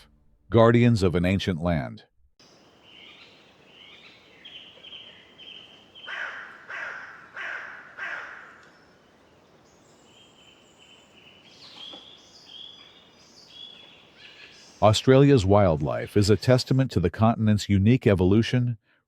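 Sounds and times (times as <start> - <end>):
birds high whistled notes: 2.4 - 16.0
bird loud harsh calls: 2.4 - 16.4.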